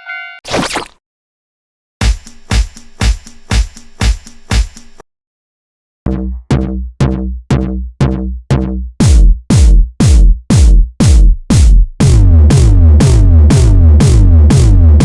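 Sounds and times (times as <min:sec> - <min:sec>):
drum machine beat: 0:02.0 - 0:05.0, 0:06.6 - 0:15.0
heavy bass: 0:06.1 - 0:15.0.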